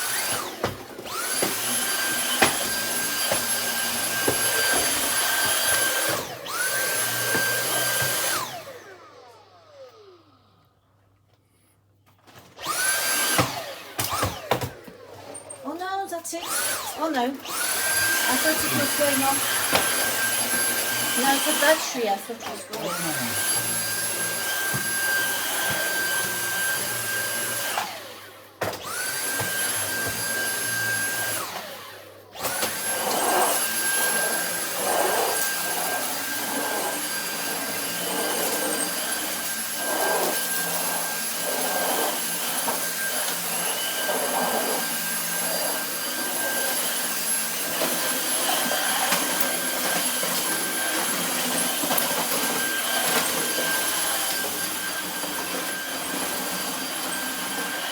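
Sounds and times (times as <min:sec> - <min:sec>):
vacuum cleaner motor whine: 0:00.0 - 0:10.8, 0:12.3 - 0:57.9.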